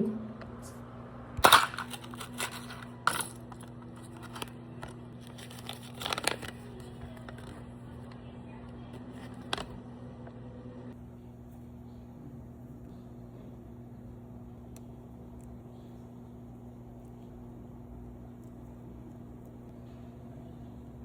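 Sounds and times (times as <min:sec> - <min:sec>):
faint low hum: 0:00.0 - 0:21.0
packaging torn and crinkled: 0:04.0 - 0:07.6.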